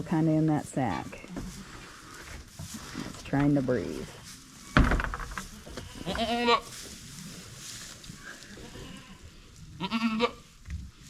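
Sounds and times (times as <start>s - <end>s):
goat bleating: 5.6s - 6.7s, 8.4s - 10.5s.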